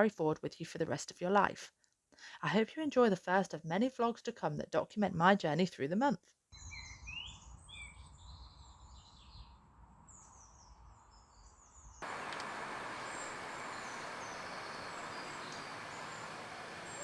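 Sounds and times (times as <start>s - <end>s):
birds chirping: 12.0s - 17.0s
steady outdoor hiss: 12.0s - 17.0s.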